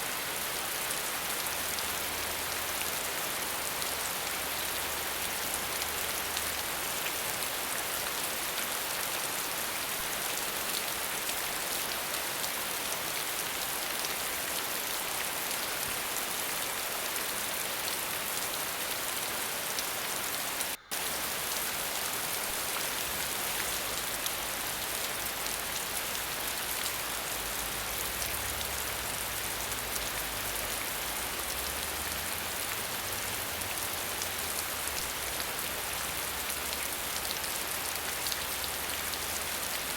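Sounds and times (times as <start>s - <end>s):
falling water hiss: 18.4s - 33.2s.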